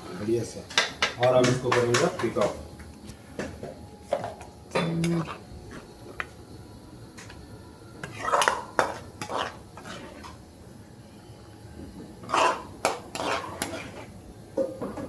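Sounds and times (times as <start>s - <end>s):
metal spoon scraping a pan: 4.0s - 6.3s, 8.0s - 10.4s, 12.2s - 15.0s.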